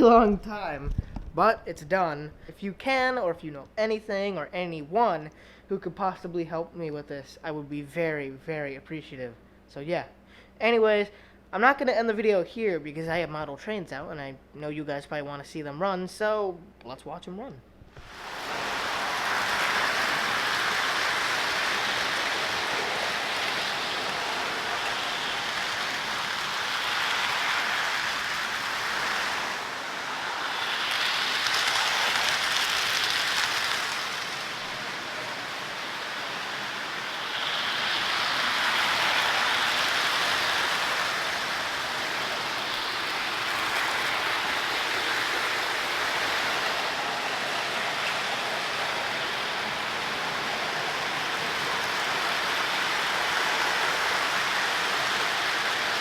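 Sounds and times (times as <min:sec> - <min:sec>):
model train running on track: 0:18.1 - 0:56.0.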